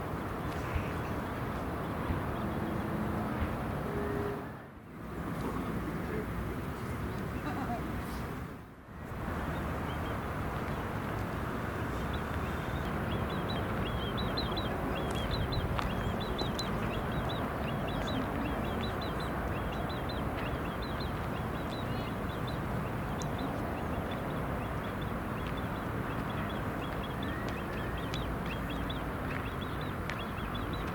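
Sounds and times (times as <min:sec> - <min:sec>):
small birds chirping: 0:11.9 - 0:30.9.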